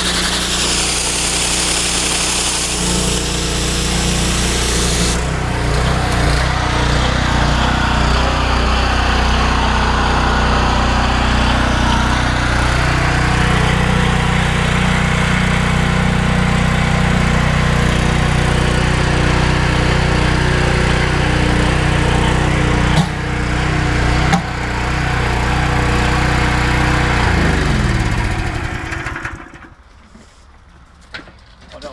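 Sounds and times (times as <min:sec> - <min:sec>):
water jetting: 0:00.0 - 0:08.8
pressure washer engine running: 0:00.0 - 0:29.7.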